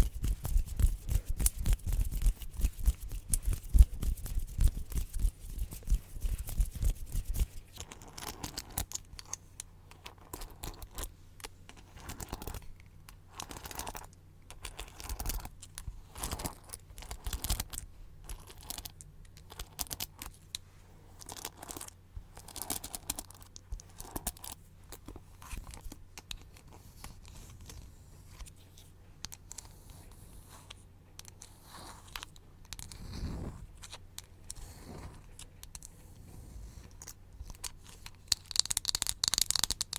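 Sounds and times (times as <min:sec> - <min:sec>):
crackly strokes: 0:00.0 - 0:08.9.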